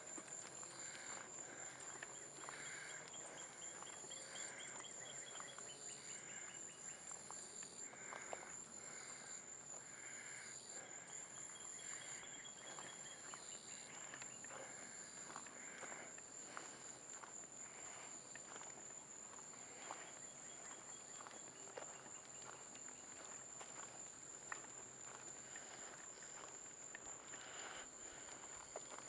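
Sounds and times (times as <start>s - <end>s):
insects chirping in pulses: 0.0s - 29.0s
insects trilling: 0.0s - 29.0s.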